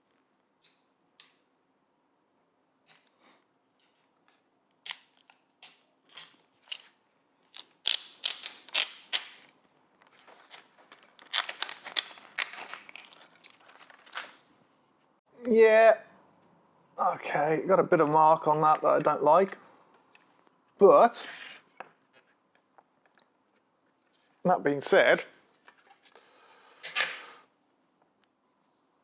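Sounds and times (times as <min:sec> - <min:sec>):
plastic film being peeled: 0:07.5 - 0:09.5, 0:10.1 - 0:14.4.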